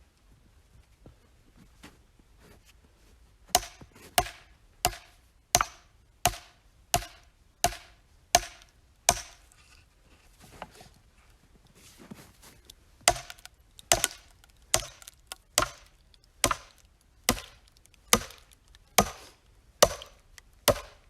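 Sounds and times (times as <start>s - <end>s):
axe chopping firewood: 3.5s - 9.4s, 13.0s - 21.0s.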